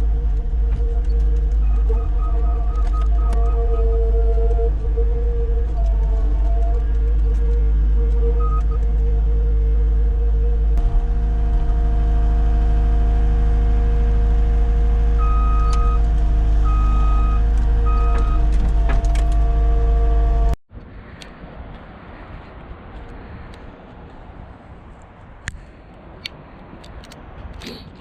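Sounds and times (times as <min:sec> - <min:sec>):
diesel engine running under load: 0:00.0 - 0:20.6
backup alarm beeping: 0:16.6 - 0:18.5.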